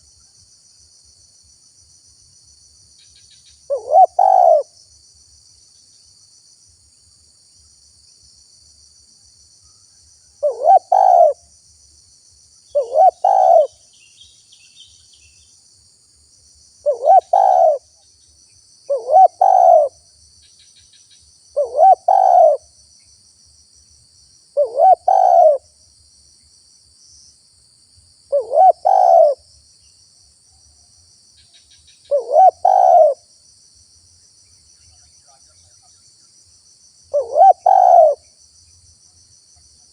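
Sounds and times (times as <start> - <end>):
dove cooing: 3.7 - 4.7, 10.4 - 11.4, 12.8 - 13.8, 16.8 - 17.9, 18.9 - 20.0, 21.6 - 22.6, 24.6 - 25.6, 28.3 - 29.4, 32.1 - 33.2, 37.1 - 38.2.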